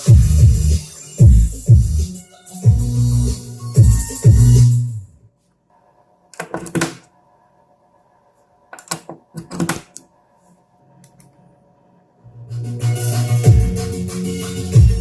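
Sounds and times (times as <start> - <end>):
background music: 0.0 - 5.1, 12.3 - 15.0.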